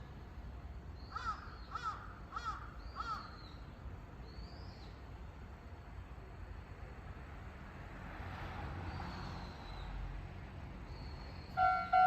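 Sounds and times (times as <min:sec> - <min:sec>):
crow cawing: 0:01.1 - 0:03.3.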